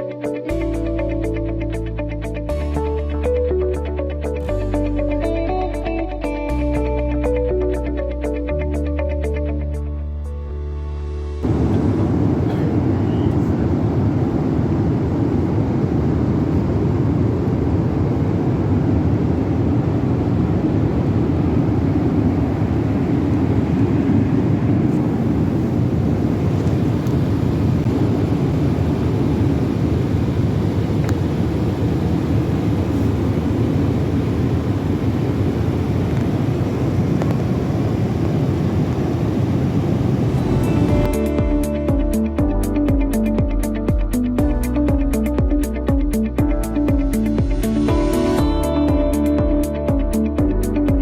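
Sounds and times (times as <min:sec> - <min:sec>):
jet engines roaring: 0:11.4 - 0:41.2.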